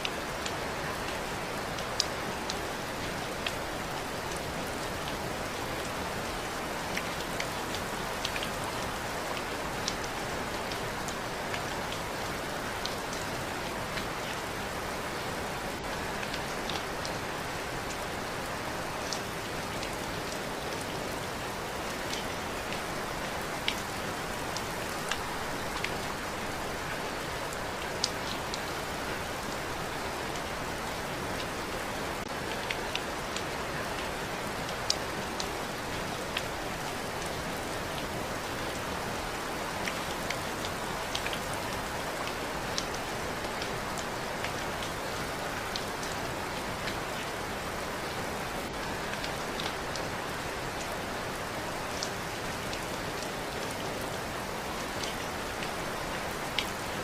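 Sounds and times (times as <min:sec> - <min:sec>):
steady rain hiss: 0:00.0 - 0:57.0
raindrop ticks: 0:54.9 - 0:56.8.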